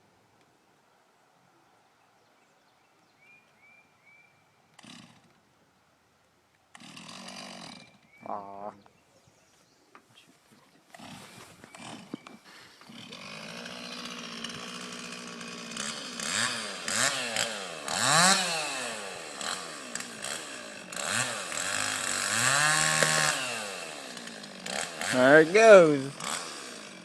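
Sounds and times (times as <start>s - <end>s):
chainsaw idling and revving: 4.8s - 5.4s, 6.7s - 8.2s, 11.0s - 27.0s.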